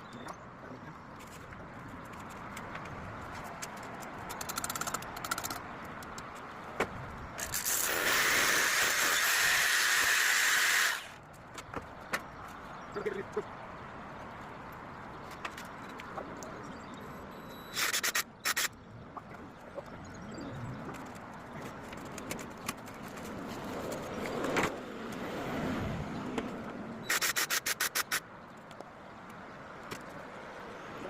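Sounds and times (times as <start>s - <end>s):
rapid clicks: 3.6s - 6.4s.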